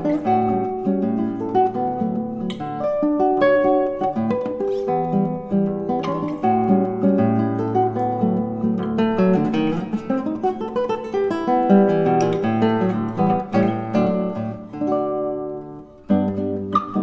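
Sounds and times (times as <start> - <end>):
solo classical guitar: 0.0 - 17.0.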